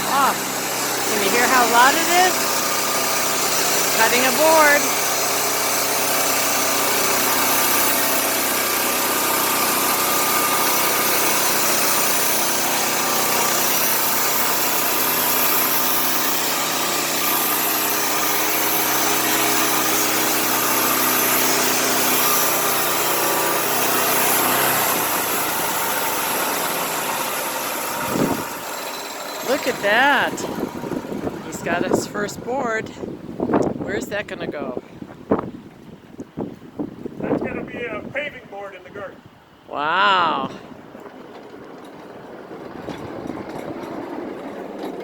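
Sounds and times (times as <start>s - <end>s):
saw whirring: 0.0s - 33.0s
sawmill engine hum: 0.0s - 34.4s.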